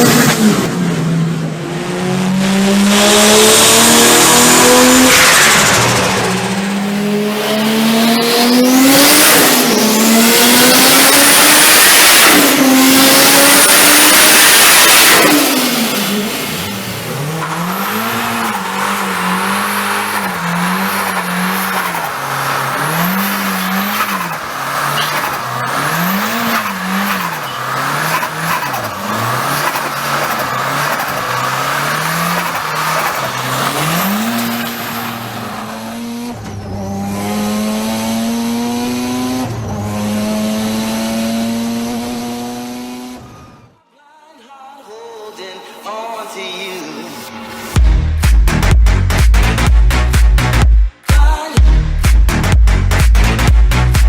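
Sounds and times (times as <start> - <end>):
turbocharged car engine revving: 0.0 - 43.8, 46.5 - 54.0
high turbo whistles and chirps: 13.1 - 37.3.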